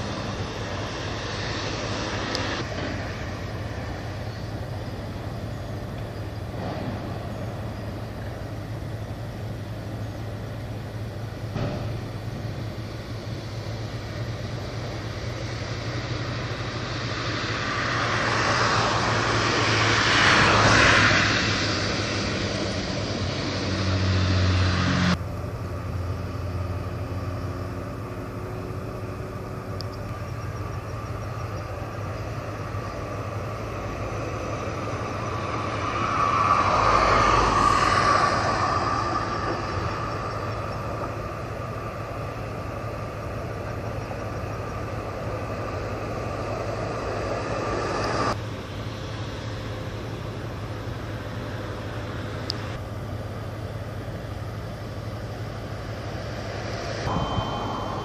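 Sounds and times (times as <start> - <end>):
steady low hum: 0.0 - 58.0
vehicles passing by: 0.0 - 58.0.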